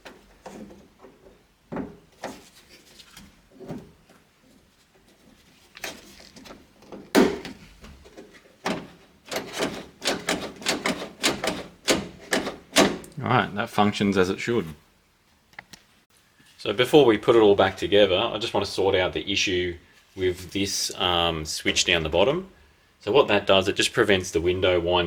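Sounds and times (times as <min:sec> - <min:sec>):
door latch clicks and clunks: 0:08.6 - 0:13.2.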